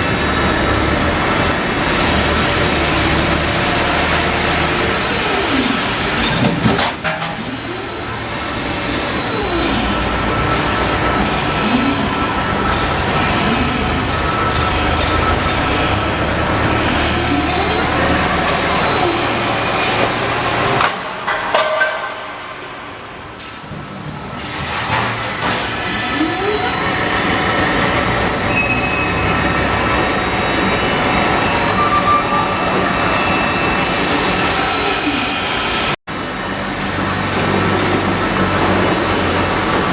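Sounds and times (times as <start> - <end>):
machine running with whine: 7.6 - 20.8
high machine squeal: 9.5 - 20.0, 25.6 - 36.0.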